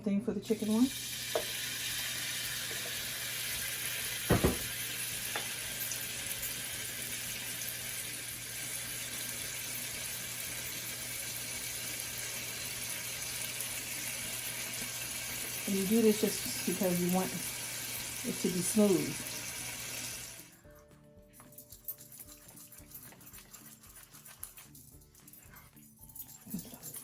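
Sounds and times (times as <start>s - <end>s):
food sizzling in a pan: 0.4s - 20.5s
knock: 4.3s - 4.7s.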